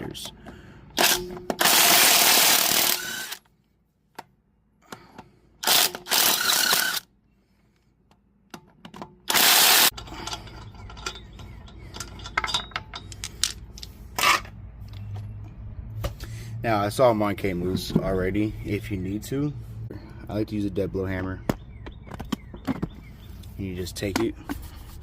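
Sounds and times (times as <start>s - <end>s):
impact wrench bursts: 0.9s - 3.4s, 5.6s - 7.1s, 9.3s - 10.3s.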